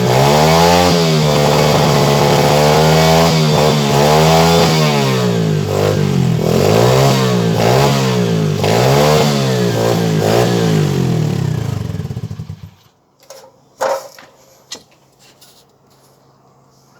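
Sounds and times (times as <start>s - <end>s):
motorbike engine revving: 0.0s - 12.9s.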